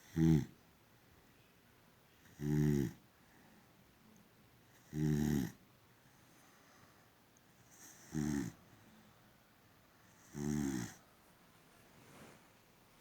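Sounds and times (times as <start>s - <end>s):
dog snoring: 0.0s - 0.6s, 2.2s - 3.0s, 4.7s - 5.6s, 7.6s - 8.6s, 10.1s - 11.0s.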